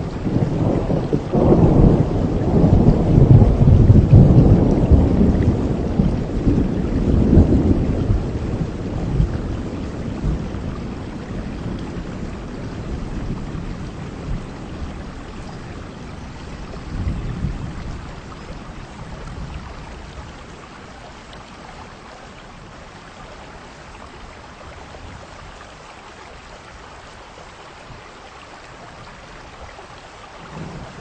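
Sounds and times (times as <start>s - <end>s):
thunder rumbling: 0.0s - 20.6s, 30.5s - 31.0s
heavy rain: 0.0s - 31.0s.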